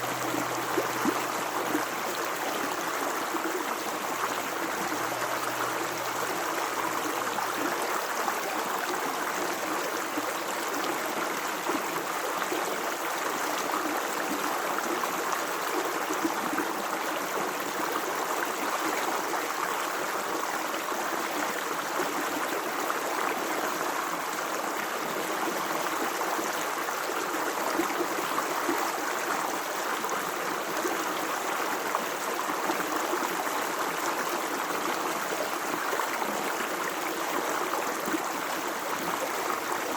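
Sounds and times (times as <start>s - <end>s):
stream gurgling: 0.0s - 39.9s.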